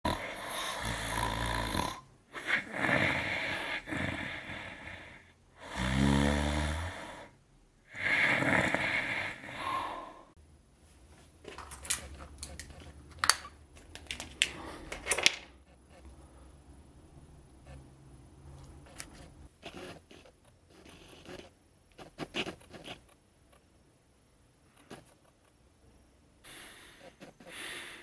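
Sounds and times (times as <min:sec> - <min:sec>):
person snoring: 0:00.0 - 0:10.4, 0:26.4 - 0:28.0.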